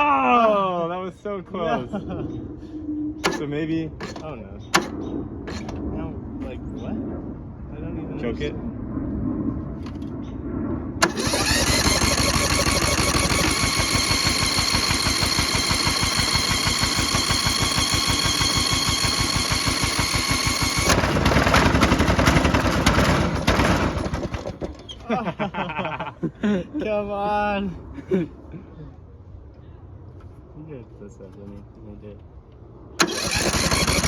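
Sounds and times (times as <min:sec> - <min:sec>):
electric starter cranking engine: 0:03.3 - 0:05.8, 0:11.0 - 0:24.9, 0:33.0 - 0:34.0
loud rough engine noise: 0:11.0 - 0:24.8, 0:33.0 - 0:34.0.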